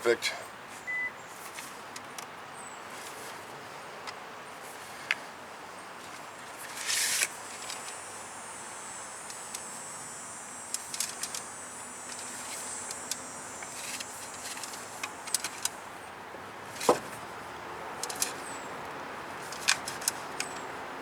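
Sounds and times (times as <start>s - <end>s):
metal brake line clicking: 9.1s - 15.8s, 18.0s - 18.6s, 19.4s - 20.7s.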